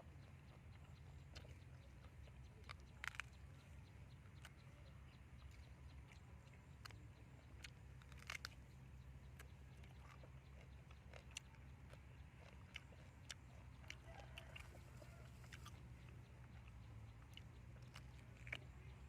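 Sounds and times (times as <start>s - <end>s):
steady low hum: 0.0s - 19.0s
person biting and chewing: 7.6s - 8.7s, 14.6s - 15.8s.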